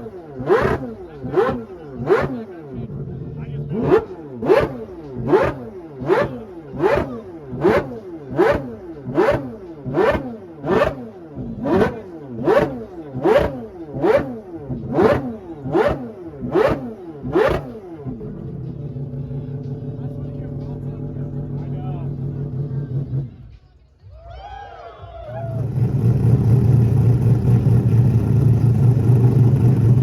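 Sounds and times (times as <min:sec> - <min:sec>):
exhaust crack: 0:00.0 - 0:23.4
rotary engine revving: 0:00.0 - 0:23.6, 0:25.4 - 0:30.0.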